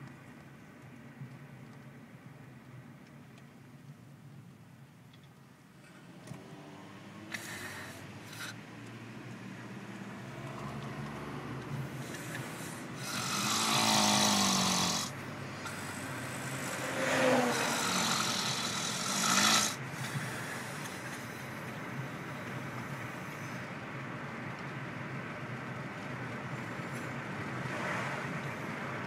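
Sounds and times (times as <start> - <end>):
man snoring heavily: 7.3 - 8.6, 12.0 - 21.0.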